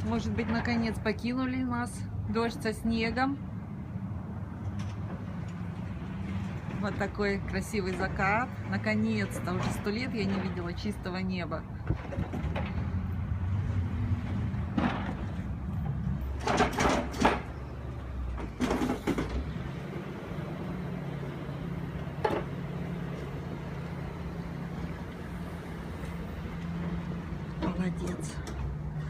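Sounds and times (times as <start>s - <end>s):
engine running: 11.8s - 29.0s.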